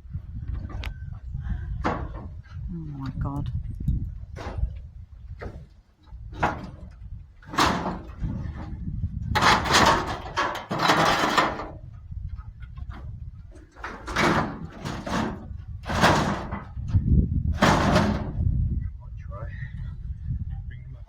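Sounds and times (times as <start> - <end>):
scrap metal banging and scraping: 1.7 - 2.6, 5.4 - 18.4.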